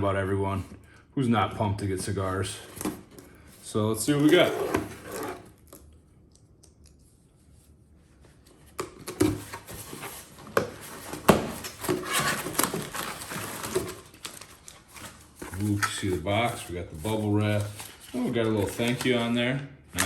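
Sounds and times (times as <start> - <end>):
cardboard box handling: 2.5 - 5.5, 8.7 - 19.3
packaging tearing and rustling: 4.0 - 5.8, 8.8 - 19.4.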